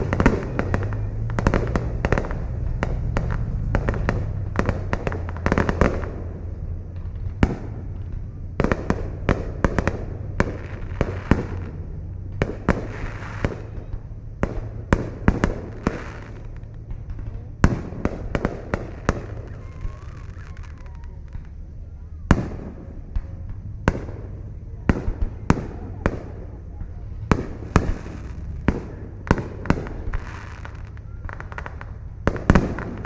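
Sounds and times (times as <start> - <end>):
fireworks bangs: 0.0 - 33.0
fireworks crackling: 0.0 - 33.0
low rumble: 0.0 - 33.0.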